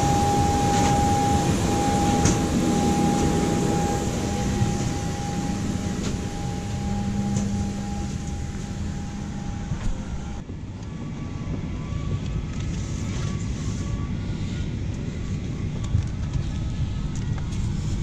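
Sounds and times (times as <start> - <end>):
steady two-pitch hum: 0.0 - 10.5
airliner cabin ventilation rumble: 0.0 - 18.0.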